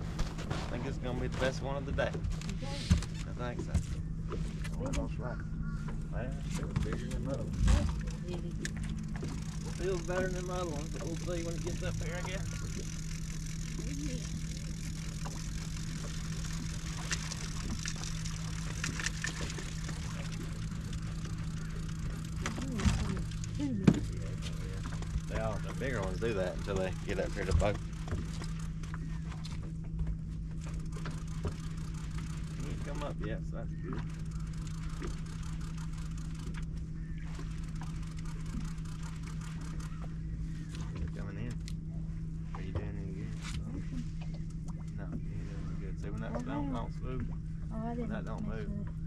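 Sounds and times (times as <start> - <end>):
boat motor humming: 0.0 - 49.0
low rumble: 0.0 - 49.0.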